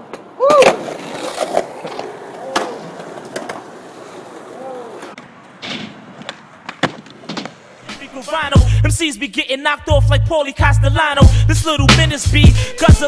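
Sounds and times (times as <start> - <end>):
voices calling out: 0.0 - 5.2
skateboard clacking on ground: 0.0 - 8.0
skateboard wheels rolling on pavement: 0.0 - 9.8.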